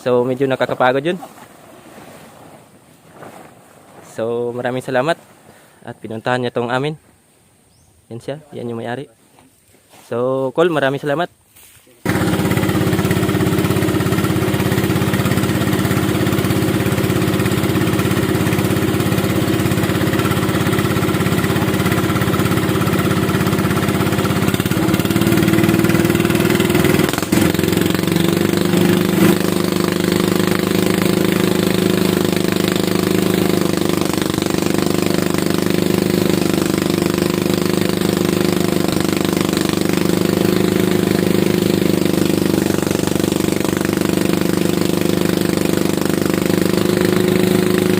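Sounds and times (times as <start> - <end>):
harvester engine running: 12.1 - 47.9.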